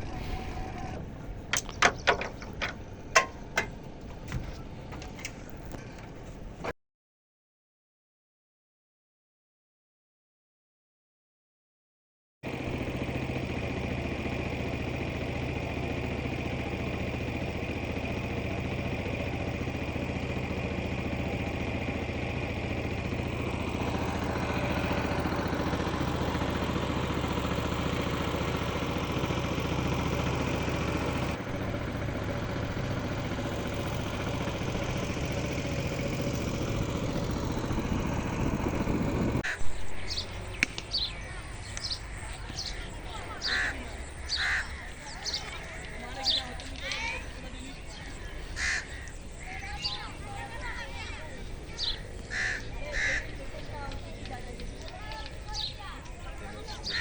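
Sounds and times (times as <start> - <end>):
engine running steadily: 0.0 - 6.7, 12.4 - 57.0.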